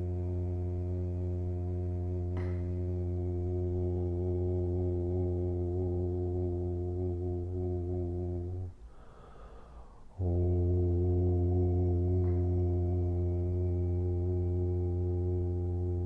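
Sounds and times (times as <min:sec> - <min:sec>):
person breathing in: 0:08.8 - 0:10.2.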